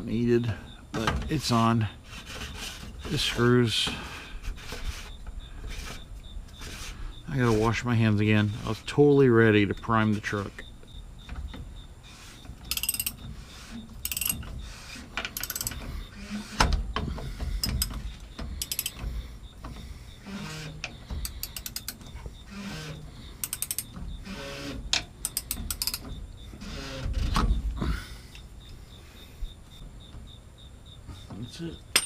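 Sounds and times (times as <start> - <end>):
mechanical clicking and clatter: 12.7 - 13.2, 14.0 - 14.5, 18.6 - 19.0, 23.4 - 23.9, 24.9 - 26.1
rapid ratchet clicks: 12.7 - 13.2, 14.0 - 14.5, 15.2 - 15.8, 18.6 - 19.0, 20.9 - 22.7, 23.4 - 24.0, 24.6 - 26.1.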